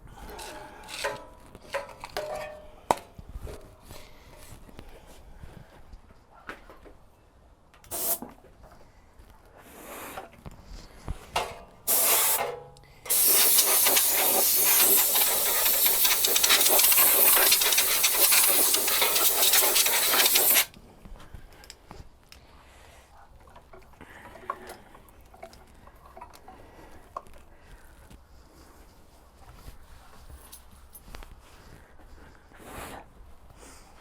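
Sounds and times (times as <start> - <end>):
pressurised spray hissing: 7.9 - 8.2, 11.9 - 12.4, 13.1 - 20.7.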